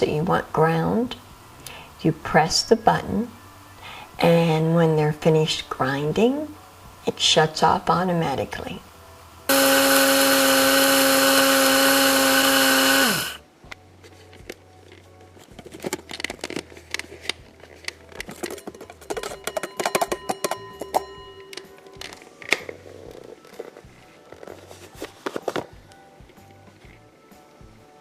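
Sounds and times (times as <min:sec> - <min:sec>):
coffee grinder grinding beans: 0:09.5 - 0:13.4
clicks and rattles: 0:14.4 - 0:22.8.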